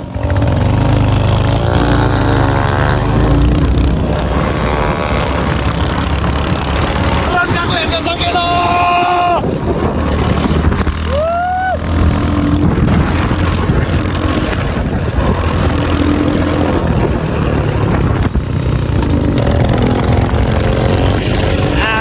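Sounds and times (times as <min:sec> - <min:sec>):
motorcycle engine running: 0:00.0 - 0:22.0
rush of noise: 0:00.0 - 0:22.0
short rising cry: 0:11.0 - 0:12.6.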